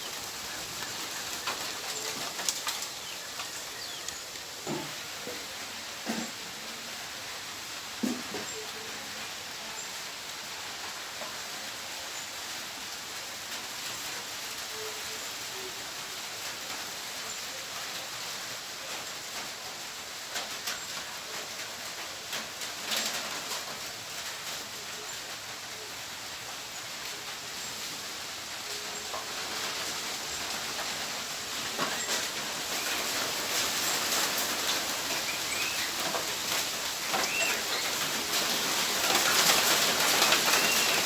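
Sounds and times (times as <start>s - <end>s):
crackles and ticks: 0.0s - 5.4s
rain-like hiss: 0.0s - 41.0s
short low bird calls: 37.0s - 38.2s, 40.2s - 41.0s.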